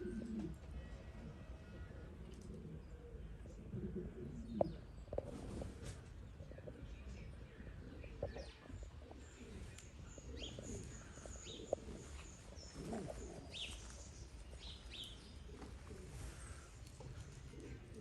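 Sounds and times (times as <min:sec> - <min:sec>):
pigeons cooing: 0:00.0 - 0:18.0
birds chirping: 0:00.1 - 0:18.0.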